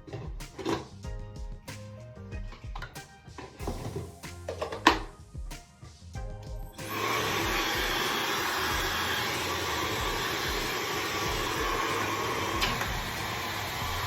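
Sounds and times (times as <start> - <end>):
hair dryer blowing: 6.8 - 14.0.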